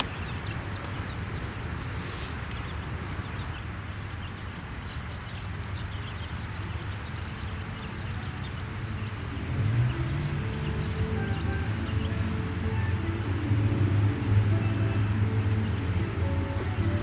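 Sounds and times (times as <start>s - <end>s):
music: 8.8s - 17.0s.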